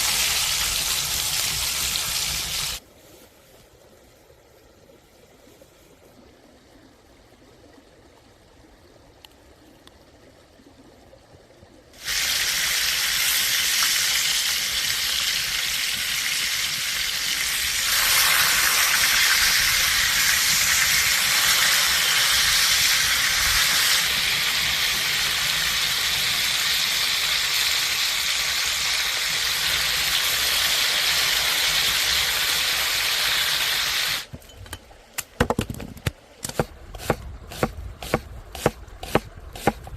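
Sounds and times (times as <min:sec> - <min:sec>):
food sizzling in hot oil: 0:00.0 - 0:02.8, 0:12.0 - 0:34.3.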